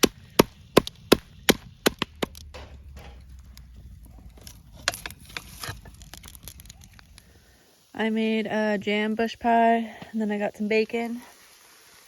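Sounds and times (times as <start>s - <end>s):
low rumble: 0.1s - 8.1s
soft knocks: 1.9s - 4.1s.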